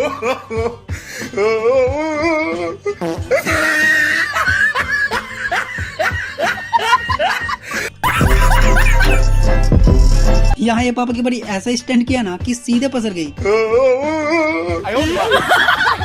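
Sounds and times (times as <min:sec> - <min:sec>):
bass-heavy music track: 0:00.0 - 0:16.0
short laughing sounds: 0:08.0 - 0:09.3.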